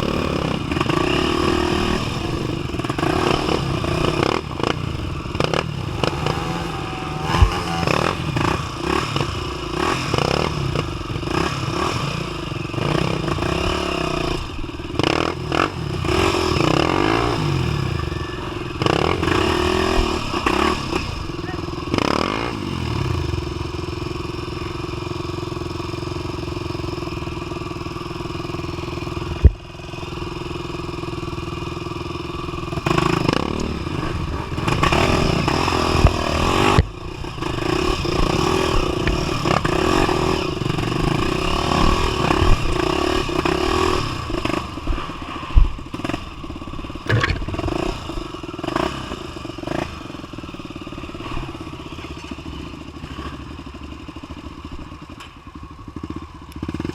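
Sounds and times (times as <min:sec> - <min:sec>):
motorcycle engine revving: 0:00.0 - 0:56.9
motorcycle knocking and clattering: 0:18.5 - 0:56.9.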